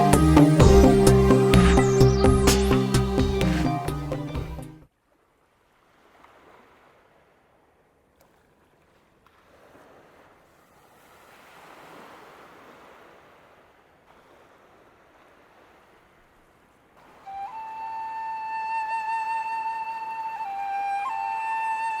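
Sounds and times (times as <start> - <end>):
faint surf washing in: 0.0 - 4.7, 9.3 - 19.1.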